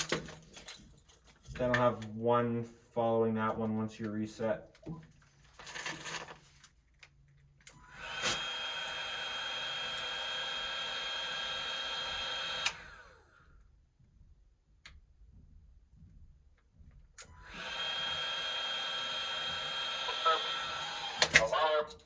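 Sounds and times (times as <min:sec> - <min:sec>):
hot-air blower fan whine: 0:07.8 - 0:13.5, 0:17.3 - 0:21.4.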